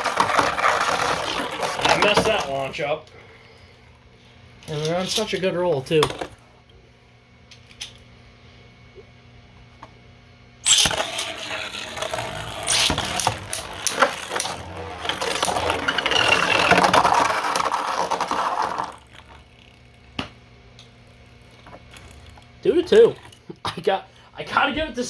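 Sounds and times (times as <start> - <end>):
spinning tops clashing and scraping: 10.6 - 20.0.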